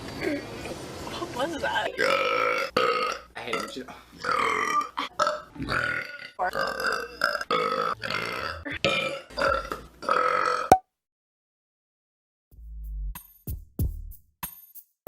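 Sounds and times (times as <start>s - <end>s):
woman burping: 2.0s - 3.2s, 4.2s - 10.8s.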